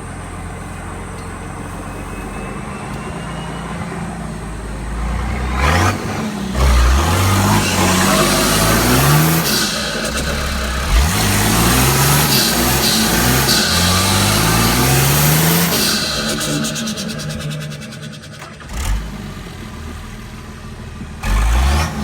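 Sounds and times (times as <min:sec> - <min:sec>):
diesel engine idling and revving: 0:00.0 - 0:22.0
turbo hissing and fluttering: 0:05.9 - 0:18.7.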